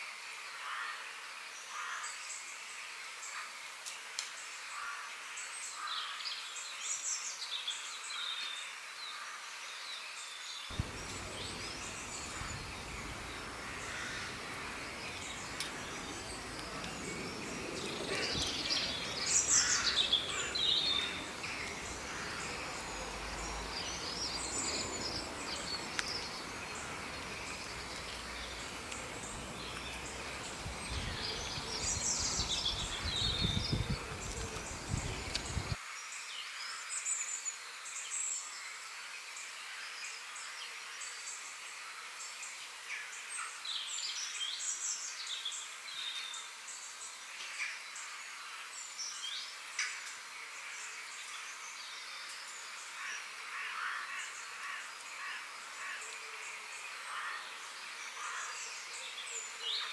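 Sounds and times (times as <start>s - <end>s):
bird chirps and calls: 10.7s - 35.8s
high insect drone: 10.7s - 35.8s.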